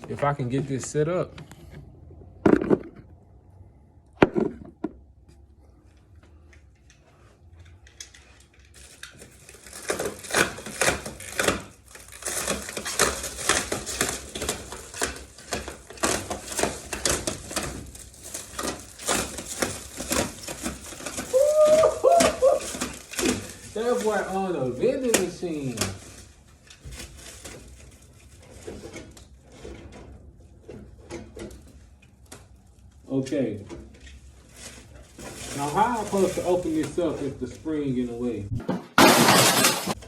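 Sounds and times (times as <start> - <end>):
plastic wrap crinkling: 7.9 - 29.4, 34.1 - 38.3.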